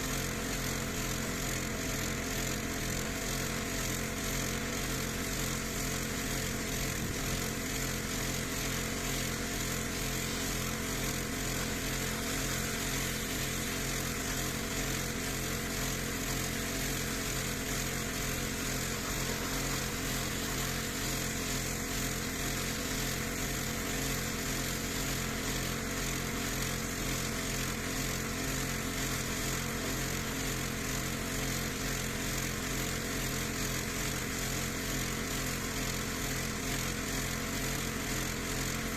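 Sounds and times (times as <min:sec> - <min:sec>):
pressure washer jet hissing: 0:08.8 - 0:25.1.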